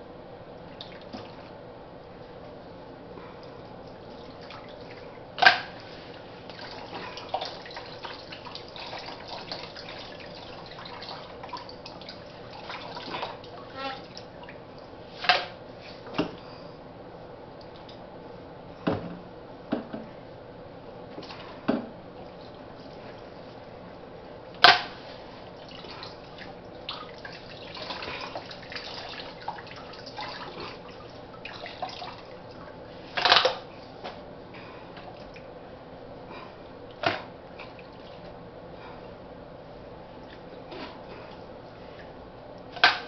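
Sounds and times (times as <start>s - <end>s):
water splashing: 24.6s - 33.3s.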